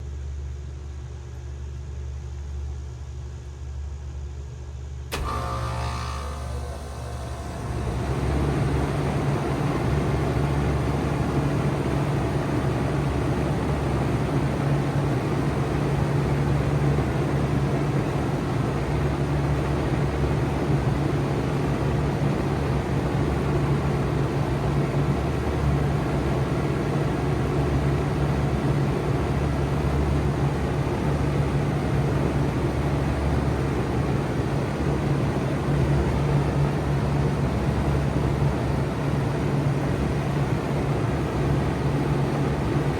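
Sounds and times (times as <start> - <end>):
heat pump humming: 5.1 - 26.8.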